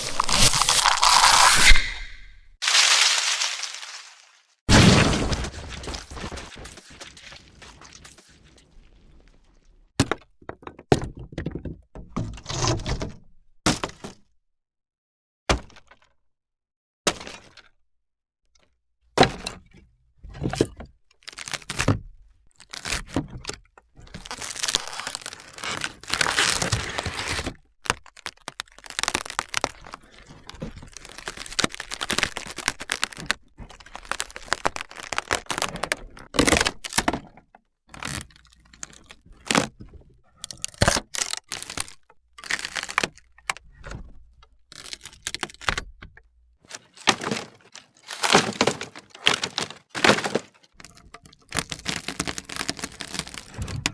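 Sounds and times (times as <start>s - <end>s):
wood cracking and splintering: 0.0s - 8.0s, 21.2s - 39.8s, 40.4s - 44.0s, 44.7s - 46.0s, 46.7s - 53.9s.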